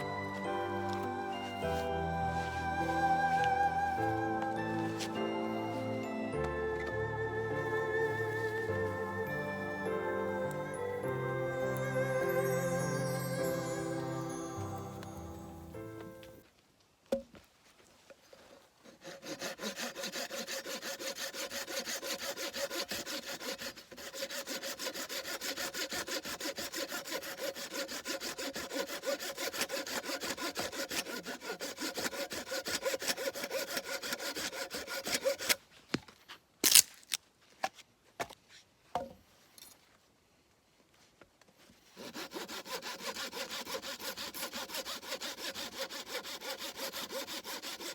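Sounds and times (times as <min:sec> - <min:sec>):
hand saw cutting wood: 0:18.8 - 0:35.7, 0:41.9 - 0:47.9.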